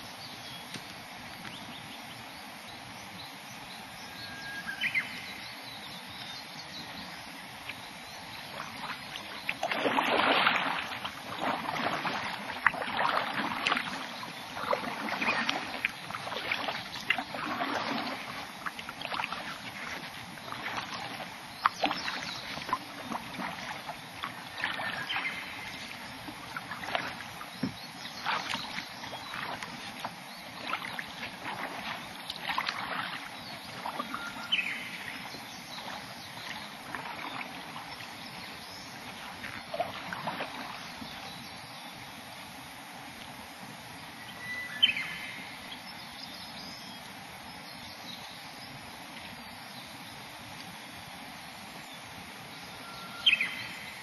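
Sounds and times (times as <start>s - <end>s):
kayak paddle splashing: 4.6s - 43.8s, 52.5s - 54.0s
water dripping: 8.5s - 38.4s.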